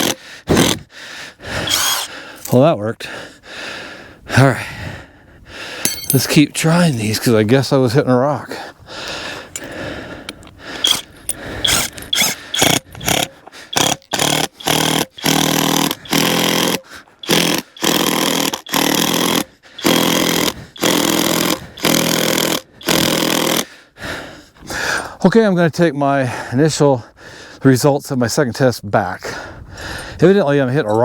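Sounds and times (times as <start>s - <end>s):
impact drill bursts: 1.6s - 2.1s, 11.6s - 23.6s.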